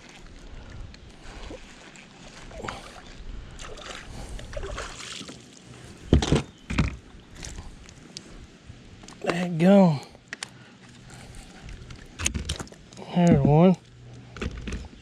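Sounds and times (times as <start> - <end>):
faint water splashes: 0.0 - 6.1.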